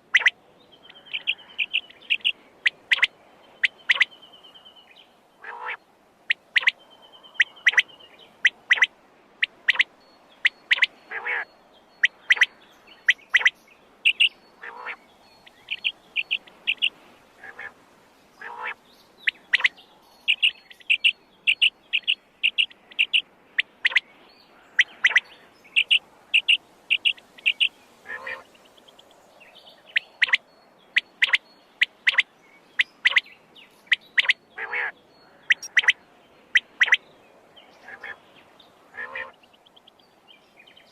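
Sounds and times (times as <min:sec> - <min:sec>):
quail calling: 0:00.0 - 0:04.1, 0:05.4 - 0:06.8, 0:07.4 - 0:12.5, 0:13.1 - 0:17.8, 0:18.4 - 0:24.0, 0:24.6 - 0:28.5, 0:29.9 - 0:30.4, 0:31.0 - 0:33.2, 0:33.9 - 0:37.0, 0:37.8 - 0:38.2, 0:38.9 - 0:39.4
lower sweeping calls: 0:00.0 - 0:40.9.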